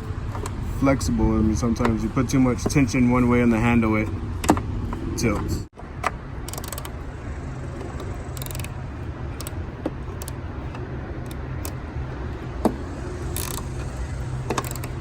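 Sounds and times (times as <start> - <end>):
ratchet clicking: 6.4 - 7.0, 7.8 - 11.8, 12.7 - 15.0.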